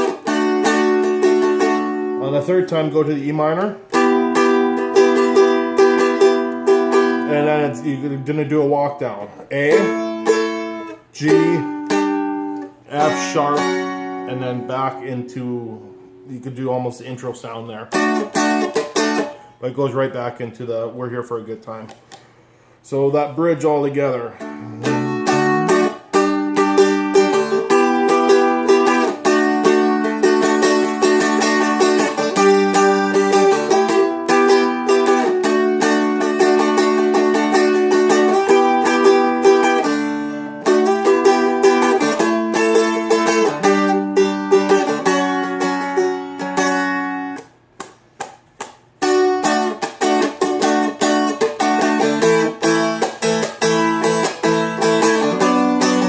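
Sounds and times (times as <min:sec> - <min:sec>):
dulcimer strummed: 0:00.0 - 0:08.3, 0:09.5 - 0:15.5, 0:24.4 - 0:47.5, 0:49.0 - 0:56.0.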